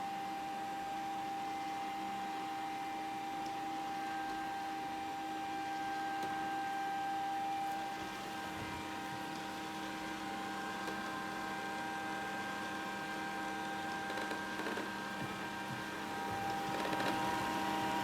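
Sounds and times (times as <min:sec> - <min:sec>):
robot vacuum running: 0:14.6 - 0:18.0.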